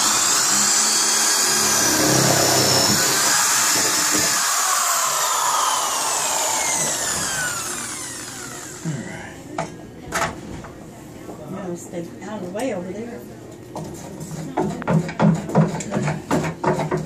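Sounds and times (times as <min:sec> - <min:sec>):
power drill boring into wood: 0:00.0 - 0:08.8.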